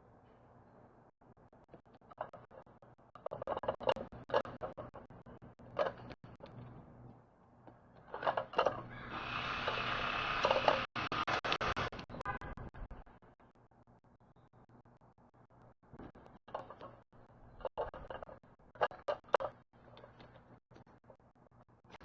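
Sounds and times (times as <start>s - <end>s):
crow hiccup-like calls: 8.8s - 10.0s
sharp clicks: 9.1s - 12.6s.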